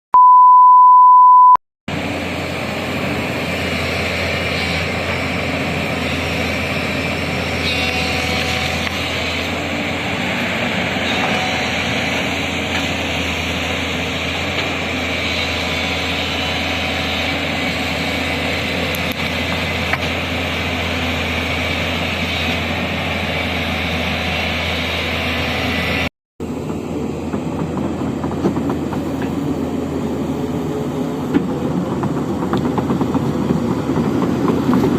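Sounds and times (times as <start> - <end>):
test tone beep: 0.2 - 1.6
excavator engines running: 1.9 - 34.9.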